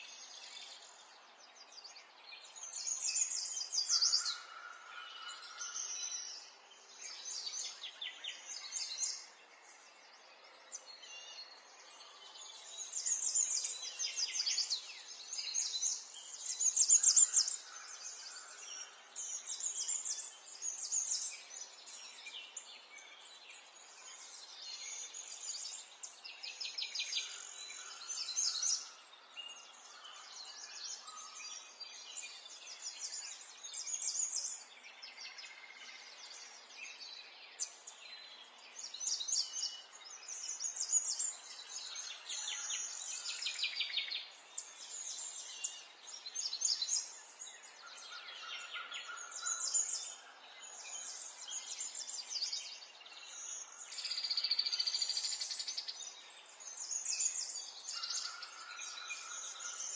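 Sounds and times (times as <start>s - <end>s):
songbirds singing: 0.0s - 59.9s.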